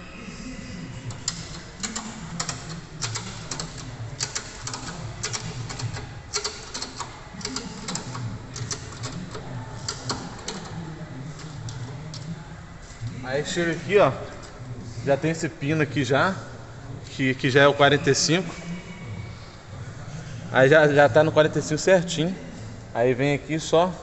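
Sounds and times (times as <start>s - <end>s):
metal ratchet clicking: 1.1s - 10.8s.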